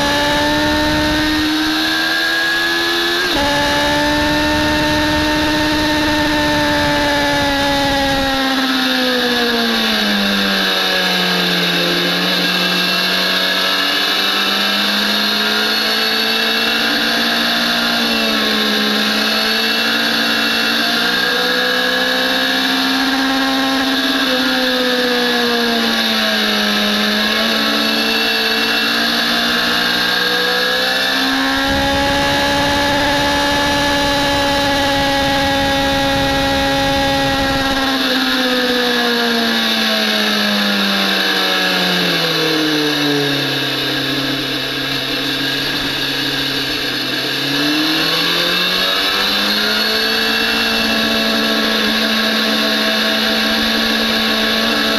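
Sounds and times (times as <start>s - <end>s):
sport motorcycle engine: 0.0s - 54.9s
wind rumble on microphone: 31.6s - 37.9s.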